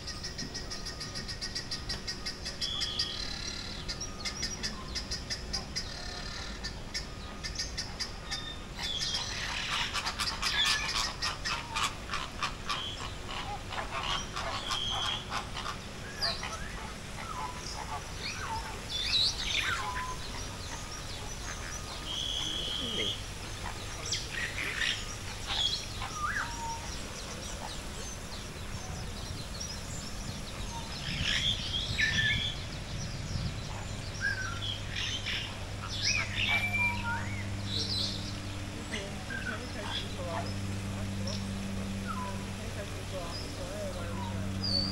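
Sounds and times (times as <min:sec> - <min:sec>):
birds chattering calls: 0:00.0 - 0:44.9.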